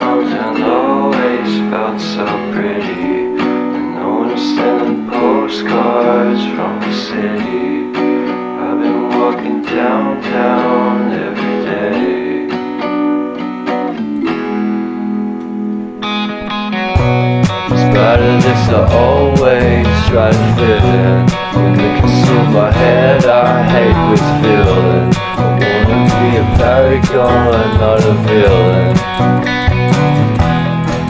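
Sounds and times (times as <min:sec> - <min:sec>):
pop song with strummed acoustic guitar: 0:00.0 - 0:31.0.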